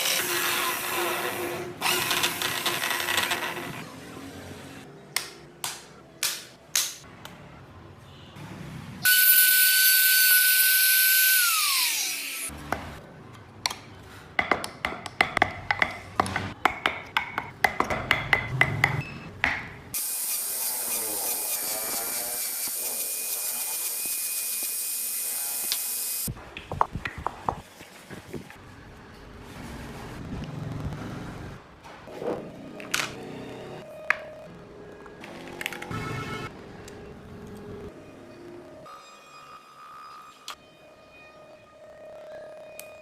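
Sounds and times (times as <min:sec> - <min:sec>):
power tool high whine: 0:09.1 - 0:12.5.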